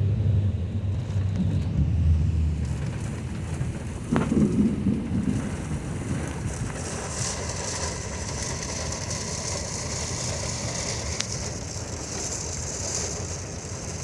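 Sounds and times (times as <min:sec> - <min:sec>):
low rumble: 0:00.0 - 0:10.4
heavy rain pouring: 0:01.0 - 0:14.0.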